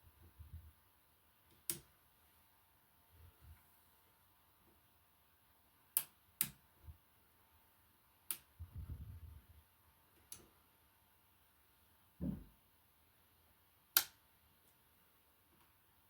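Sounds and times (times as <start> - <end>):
soft low thump: 12.2 - 12.6.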